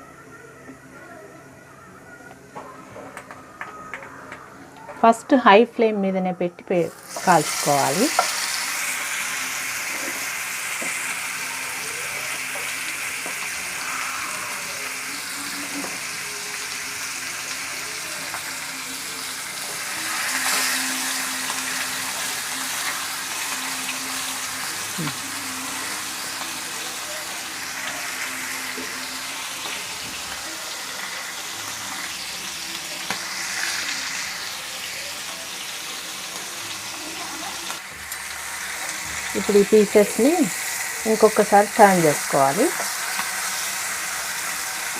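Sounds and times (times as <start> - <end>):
chicken sizzling in oil: 6.9 - 44.9.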